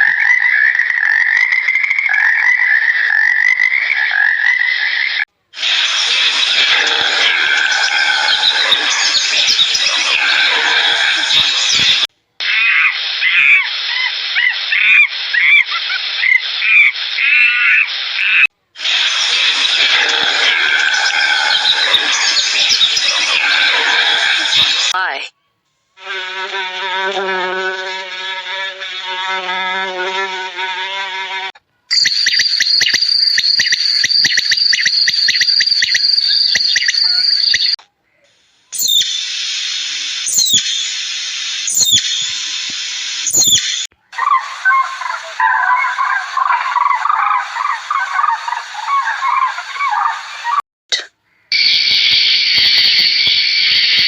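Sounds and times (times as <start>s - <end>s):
high-pitched animal calls: 0.0s - 25.5s, 31.9s - 37.8s, 38.7s - 39.2s, 40.2s - 40.9s, 41.7s - 42.5s, 43.3s - 50.6s
insect high-pitched trill: 31.9s - 37.8s, 38.8s - 42.6s, 43.2s - 43.9s, 51.5s - 54.0s
steady hiss: 38.3s - 43.9s.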